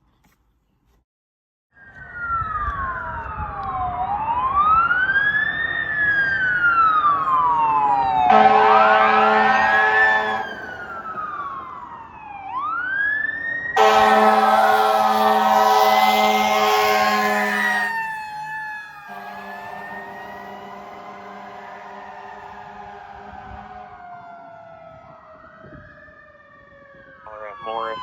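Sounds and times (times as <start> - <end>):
fire engine siren wailing: 1.8 - 28.0
air horn blast: 8.3 - 10.6, 13.8 - 17.9, 19.1 - 22.5.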